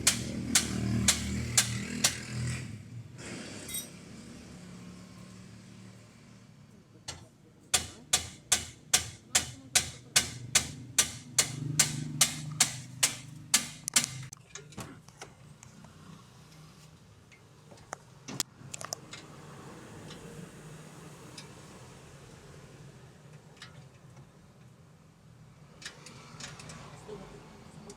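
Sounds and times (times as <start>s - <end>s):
hammer striking metal: 0.0s - 2.3s, 7.7s - 14.3s.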